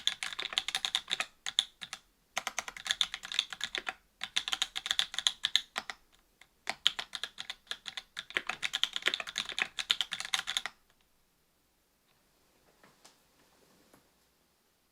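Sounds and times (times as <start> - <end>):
fast typing on mechanical keyboard: 0.0 - 6.0, 6.7 - 10.8.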